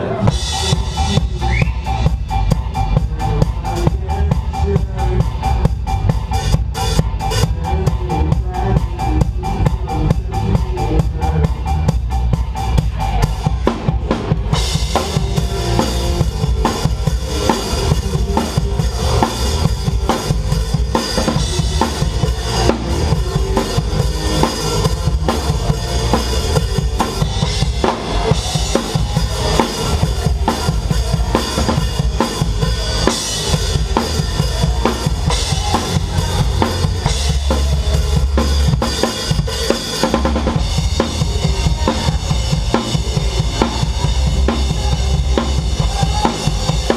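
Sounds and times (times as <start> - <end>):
live rock band: 0.0 - 46.9.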